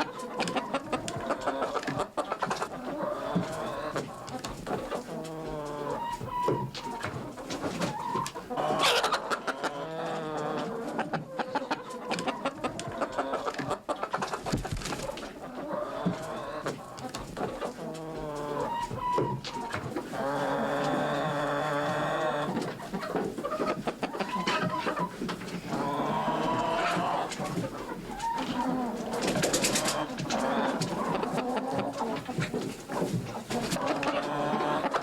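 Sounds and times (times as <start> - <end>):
hen clucking: 0.0 - 35.0
scuffling and rustling: 16.1 - 33.9.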